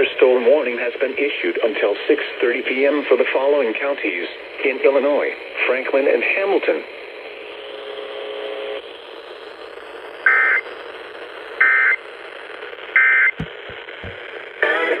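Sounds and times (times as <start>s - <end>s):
low thumps: 13.4s - 14.3s.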